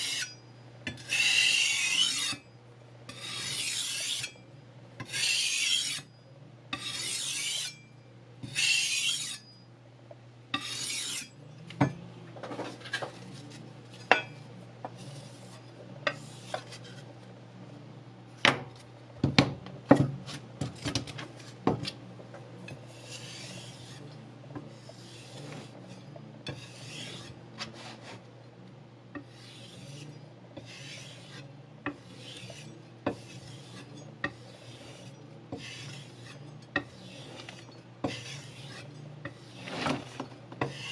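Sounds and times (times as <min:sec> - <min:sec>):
knife scraping on sandpaper: 0:01.0 - 0:02.4, 0:03.1 - 0:04.4, 0:05.0 - 0:06.1, 0:06.8 - 0:07.8, 0:08.5 - 0:09.5, 0:10.6 - 0:11.4, 0:15.0 - 0:17.1, 0:22.8 - 0:24.1, 0:24.7 - 0:28.3, 0:29.2 - 0:40.9.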